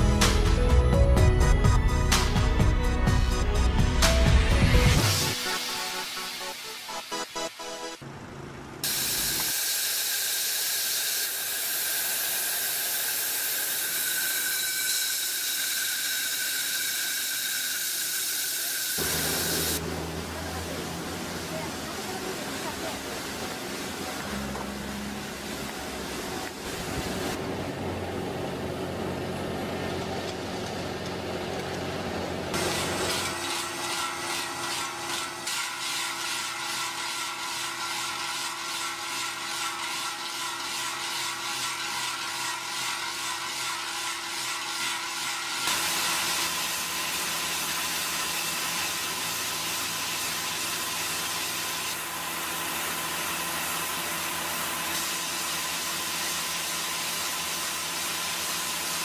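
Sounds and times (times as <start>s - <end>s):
machinery running: 0.0s - 35.9s.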